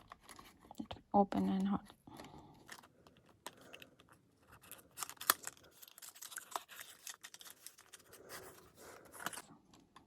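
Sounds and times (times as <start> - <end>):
packaging rustling and tearing: 2.2 - 9.5.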